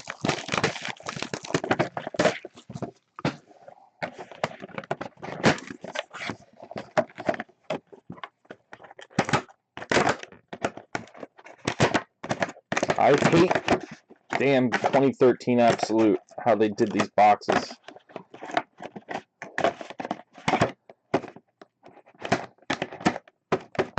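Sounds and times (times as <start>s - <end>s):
wrapping and cardboard crinkling: 0.0s - 9.2s.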